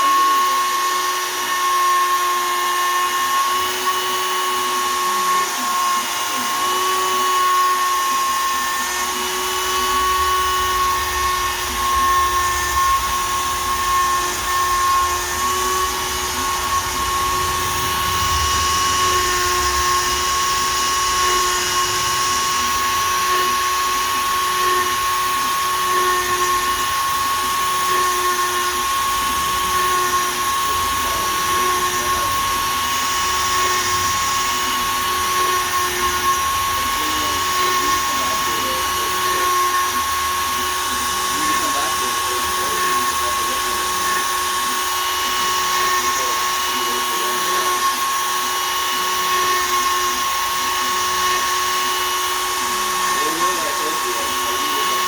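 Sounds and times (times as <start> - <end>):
router spindle high whine: 0.0 - 55.0
low rumble: 9.5 - 38.9.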